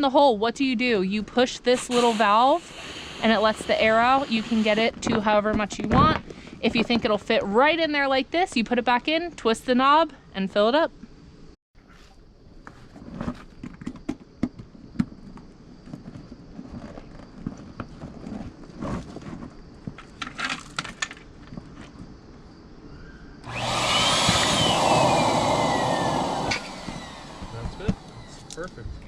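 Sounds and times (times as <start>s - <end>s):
electric air pump whining: 1.8s - 5.0s, 23.4s - 28.8s.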